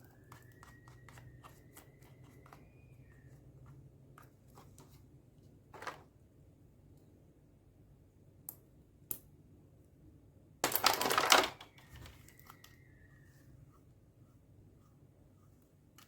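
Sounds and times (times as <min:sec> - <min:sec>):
toy packaging clicks: 0:10.6 - 0:11.8
packaging crinkling: 0:10.6 - 0:12.1
faint squeak: 0:11.7 - 0:14.0.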